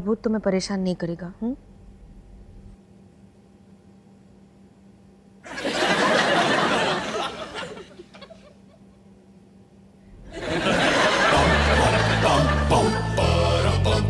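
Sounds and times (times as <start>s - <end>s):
audience laughter: 5.5s - 8.8s, 10.3s - 13.6s.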